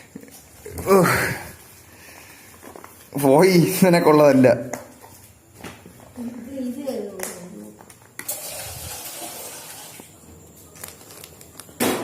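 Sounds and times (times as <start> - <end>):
water running: 8.2 - 10.3.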